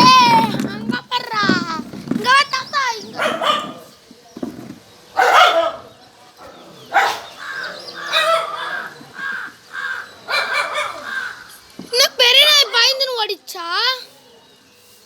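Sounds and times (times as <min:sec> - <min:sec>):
crows cawing: 0:07.2 - 0:11.7.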